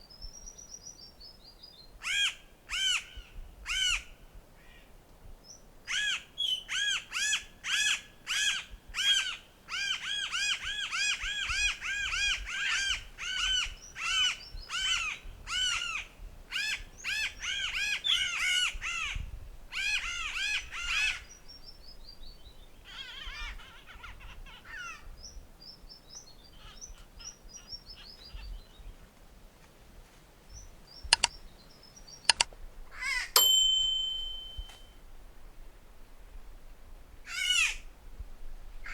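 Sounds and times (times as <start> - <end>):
sharp clicks: 31.1 - 31.4, 32.3 - 32.6.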